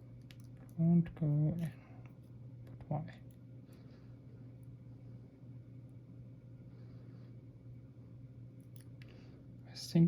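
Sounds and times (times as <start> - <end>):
low room hum: 0.0 - 10.0.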